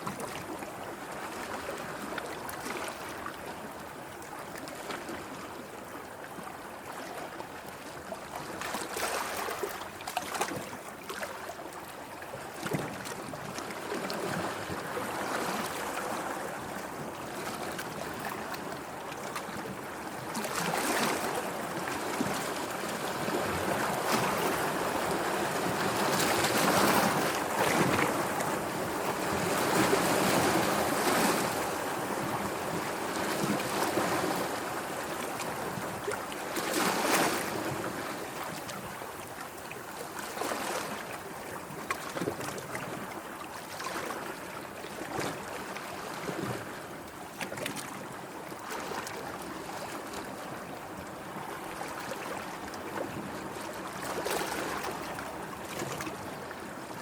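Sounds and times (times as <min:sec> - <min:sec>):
sea waves breaking: 0:20.3 - 0:39.2.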